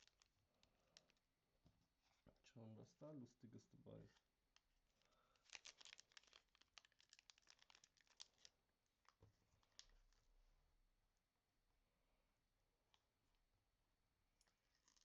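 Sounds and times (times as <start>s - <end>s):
packaging crinkling and tearing: 0.0s - 1.2s, 5.0s - 10.2s, 14.6s - 15.0s.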